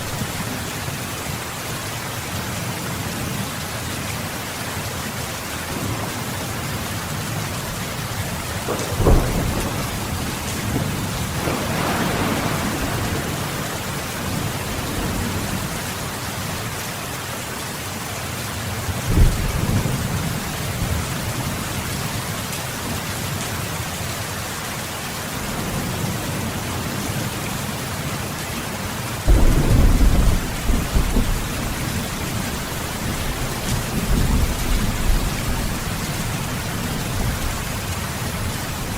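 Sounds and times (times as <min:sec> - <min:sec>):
steady rain falling: 0:00.0 - 0:38.9
deep thunder rumble: 0:05.8 - 0:16.7, 0:29.3 - 0:38.9
thunder cracks: 0:08.3 - 0:16.3, 0:29.3 - 0:35.8.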